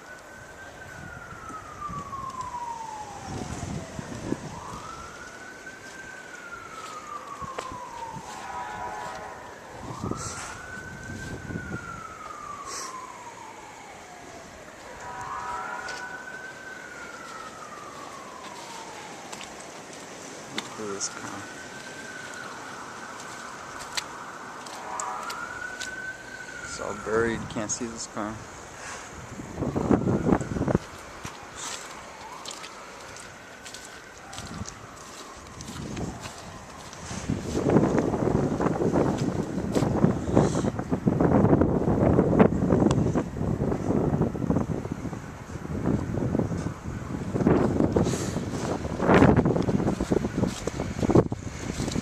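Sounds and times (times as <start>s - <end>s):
emergency siren wailing: 0.0s - 52.0s
footsteps crunching in snow: 3.4s - 11.5s, 14.7s - 26.1s, 30.6s - 40.1s, 47.4s - 52.0s.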